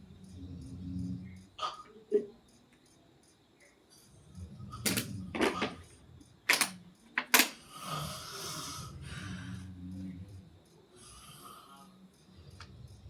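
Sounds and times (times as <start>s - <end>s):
person snoring: 7.6s - 13.0s.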